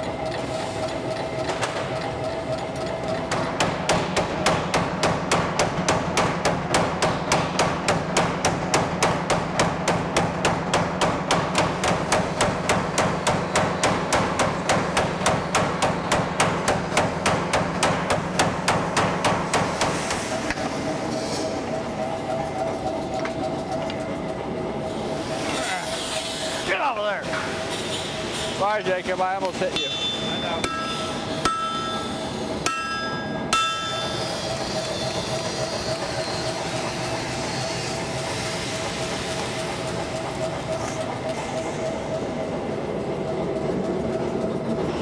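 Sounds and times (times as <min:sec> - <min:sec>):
power hammer striking steel: 0:03.2 - 0:20.7, 0:29.7 - 0:37.0.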